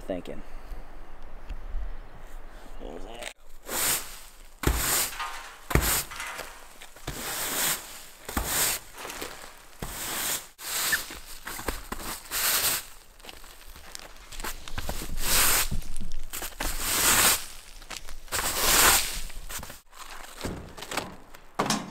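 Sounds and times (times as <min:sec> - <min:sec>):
debris scraping on roof: 0:03.5 - 0:21.9
footsteps on roof: 0:04.6 - 0:10.4, 0:19.5 - 0:21.9.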